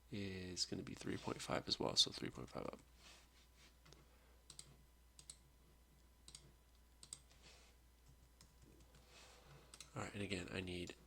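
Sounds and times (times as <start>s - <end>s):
computer mouse clicks: 3.9s - 5.4s, 6.2s - 7.4s, 9.7s - 10.0s.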